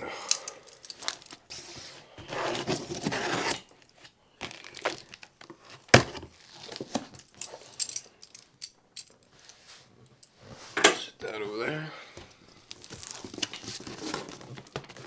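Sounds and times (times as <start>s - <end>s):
cardboard tearing and crinkling: 1.0s - 7.1s, 12.6s - 15.0s.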